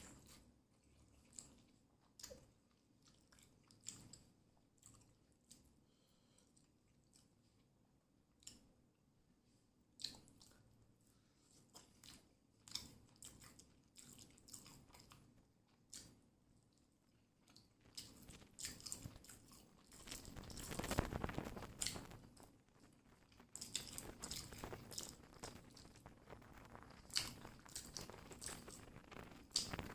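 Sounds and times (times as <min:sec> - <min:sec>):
chewing and crunching food: 0:00.0 - 0:08.8, 0:09.9 - 0:29.9.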